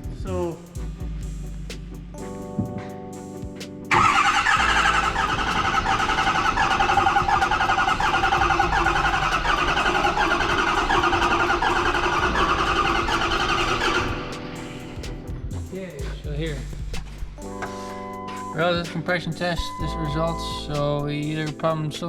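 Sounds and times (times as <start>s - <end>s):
truck engine cranking on starter: 3.9s - 14.2s.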